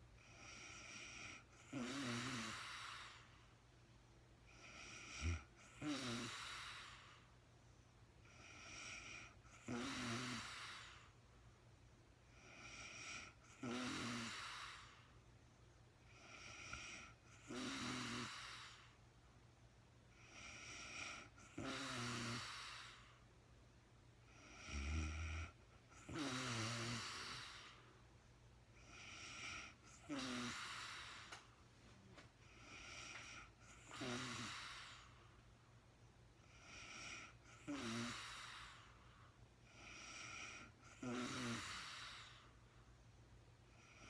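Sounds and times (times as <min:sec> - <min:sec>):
woman snoring: 0:00.2 - 0:03.3, 0:04.5 - 0:07.2, 0:08.3 - 0:11.1, 0:12.3 - 0:15.0, 0:16.1 - 0:19.0, 0:20.2 - 0:23.2, 0:24.3 - 0:27.9, 0:28.8 - 0:31.4, 0:32.4 - 0:35.3, 0:36.4 - 0:39.0, 0:39.7 - 0:42.6
low snort: 0:39.9 - 0:42.3.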